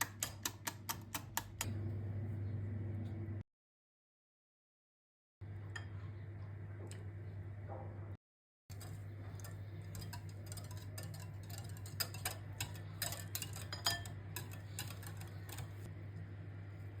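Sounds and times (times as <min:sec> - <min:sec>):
utensils and dishes clicking: 0:00.0 - 0:01.7, 0:08.7 - 0:15.9
steady low hum: 0:01.3 - 0:03.4, 0:05.4 - 0:17.0.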